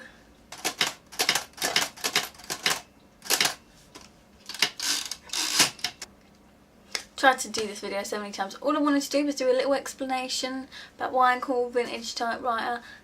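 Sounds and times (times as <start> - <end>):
typewriter keys clacking: 0.6 - 3.6.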